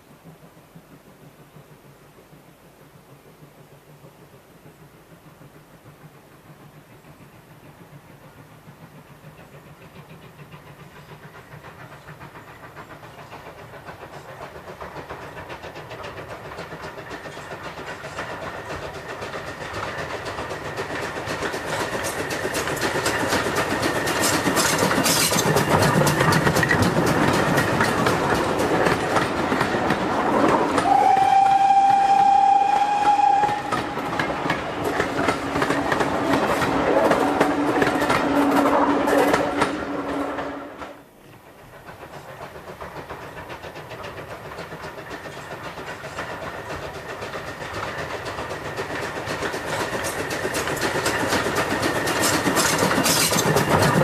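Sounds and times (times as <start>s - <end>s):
steam train chuffing and wheel clatter: 0.0s - 54.0s
train whistle: 30.8s - 34.1s, 36.6s - 41.1s.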